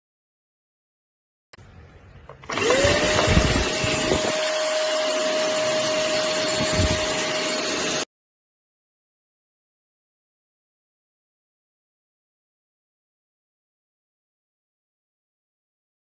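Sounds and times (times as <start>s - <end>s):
vacuum cleaner motor whining: 2.3s - 8.1s.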